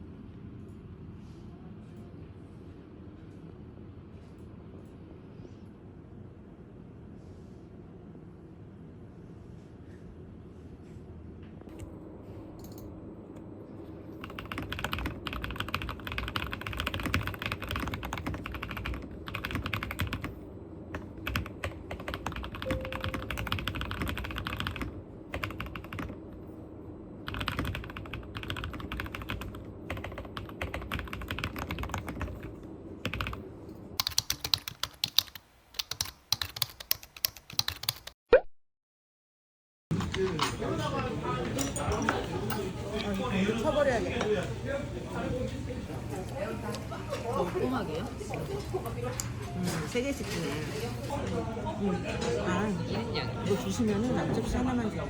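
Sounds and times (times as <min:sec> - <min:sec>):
mechanical keyboard typing: 0:14.2 - 0:20.3, 0:21.0 - 0:26.2, 0:27.3 - 0:32.4, 0:33.0 - 0:33.4, 0:34.0 - 0:38.2.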